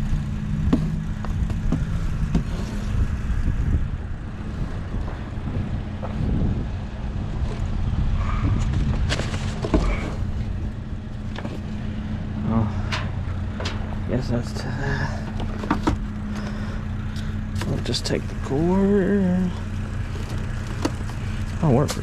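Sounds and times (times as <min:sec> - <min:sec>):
vehicle engine idling: 0:00.0 - 0:22.0
clicks and knocks of handling: 0:12.9 - 0:13.9.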